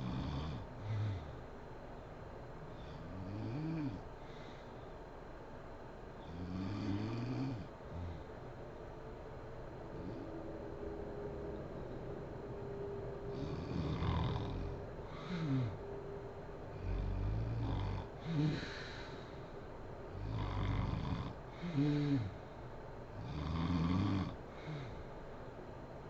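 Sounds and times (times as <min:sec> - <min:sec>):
woman snoring: 0:00.0 - 0:01.4, 0:02.8 - 0:04.0, 0:06.2 - 0:08.3, 0:13.3 - 0:15.8, 0:16.7 - 0:19.4, 0:20.1 - 0:22.4, 0:23.2 - 0:25.0.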